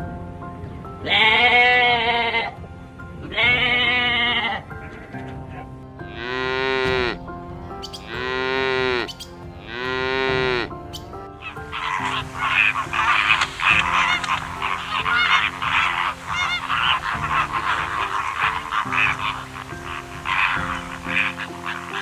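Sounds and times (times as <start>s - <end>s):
quiet background music: 0.0s - 22.0s
farm animal calling: 7.8s - 22.0s.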